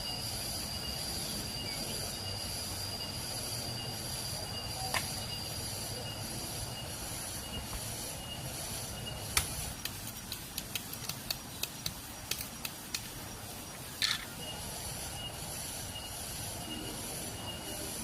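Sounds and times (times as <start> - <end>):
insects droning: 0.0 - 18.0
sharp irregular clicks: 9.3 - 13.2.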